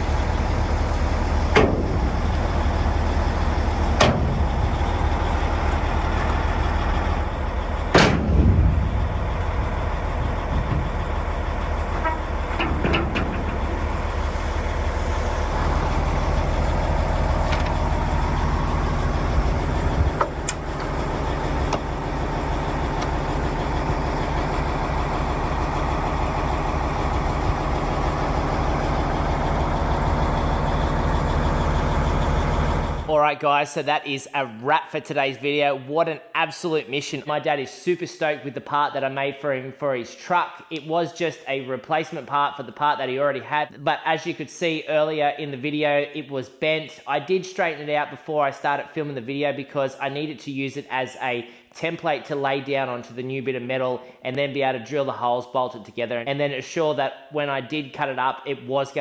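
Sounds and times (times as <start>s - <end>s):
diesel truck engine running: 0.0s - 33.2s.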